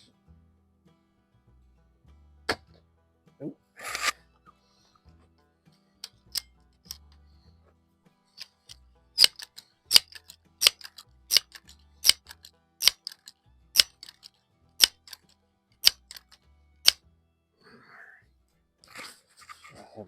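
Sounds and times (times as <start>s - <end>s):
air gun pumping clicks: 8.4s - 17.0s.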